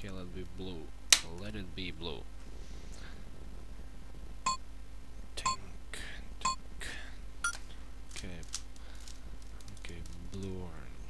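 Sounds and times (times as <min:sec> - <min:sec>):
soft hissing: 0:01.9 - 0:04.4.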